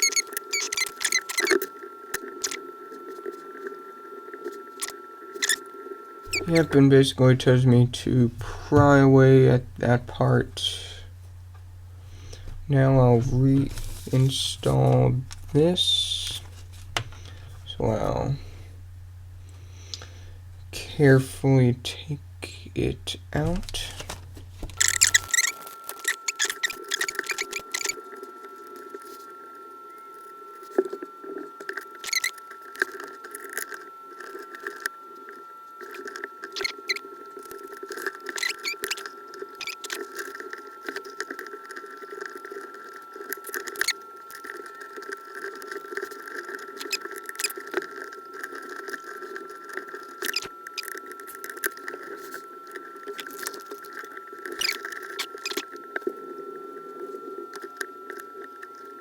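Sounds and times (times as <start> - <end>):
small parts and tools clicking: 0.0 - 1.7, 23.5 - 28.0, 35.8 - 56.1
steady high-pitched hum: 0.0 - 59.0.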